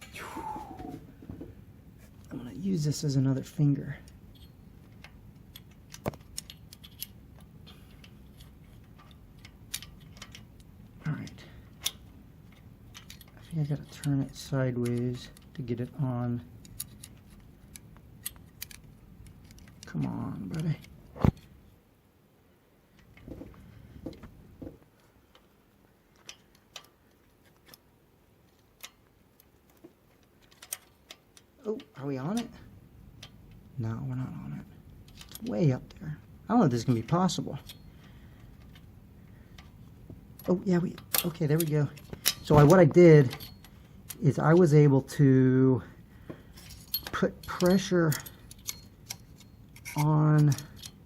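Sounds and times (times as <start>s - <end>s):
metal clicks and taps: 8.4s - 10.5s, 26.1s - 26.9s, 28.5s - 31.5s.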